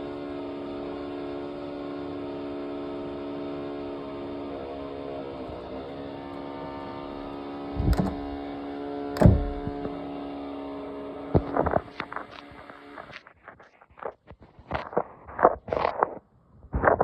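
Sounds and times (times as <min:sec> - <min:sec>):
electric power tool motor running: 0:00.0 - 0:13.1.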